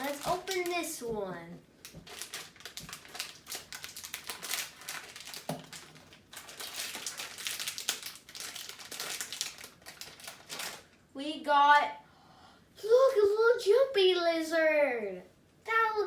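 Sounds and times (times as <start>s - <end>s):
plastic bag crinkling: 0.0s - 1.2s, 1.8s - 11.0s.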